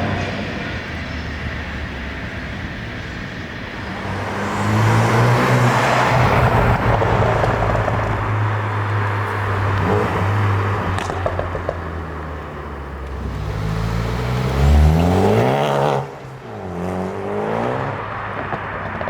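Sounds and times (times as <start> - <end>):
car engine revving: 3.7 - 18.5.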